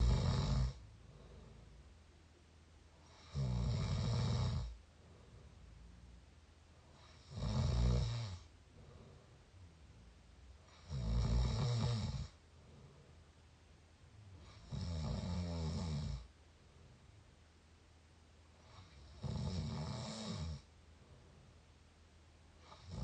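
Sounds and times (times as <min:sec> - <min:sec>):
person snoring: 0:00.0 - 0:01.6, 0:03.0 - 0:04.8, 0:07.0 - 0:09.1, 0:10.7 - 0:12.4, 0:14.4 - 0:16.3, 0:18.6 - 0:20.7.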